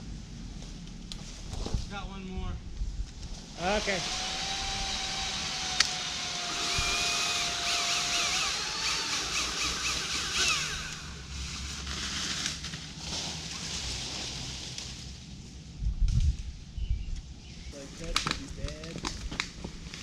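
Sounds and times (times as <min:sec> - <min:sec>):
chainsaw whining: 0:03.6 - 0:12.6.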